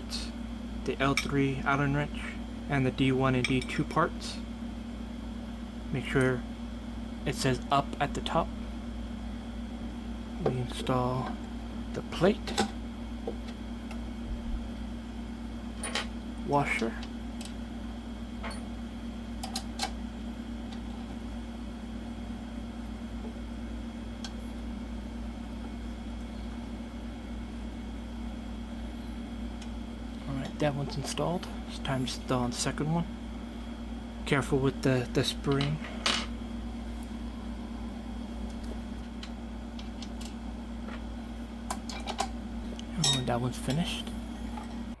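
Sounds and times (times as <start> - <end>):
steady low hum: 0.0 - 45.0.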